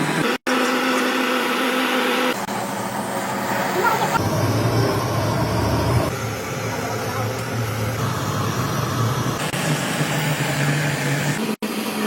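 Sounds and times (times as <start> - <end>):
engine running with low hum: 2.3 - 11.5.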